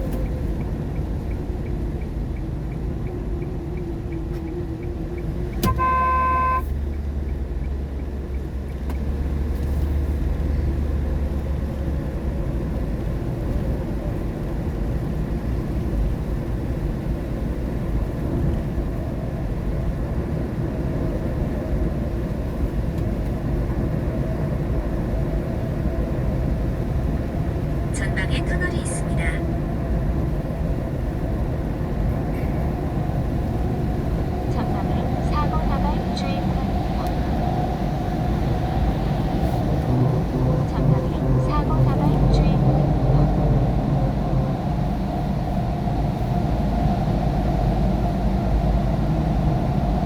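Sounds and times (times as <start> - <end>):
road and tyre noise in car: 0.0 - 50.0
low rumble: 26.9 - 50.0.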